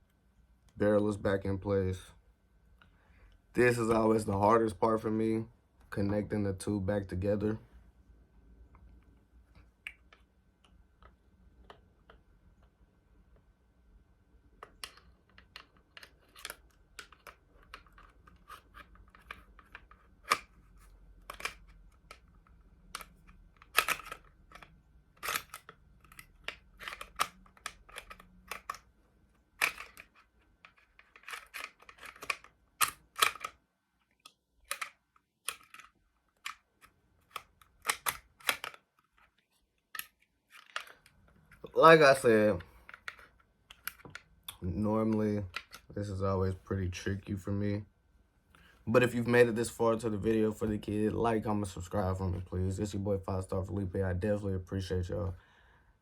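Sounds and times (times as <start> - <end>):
pistol parts clicking and rattling: 14.6 - 41.4, 42.2 - 44.4, 45.0 - 45.9.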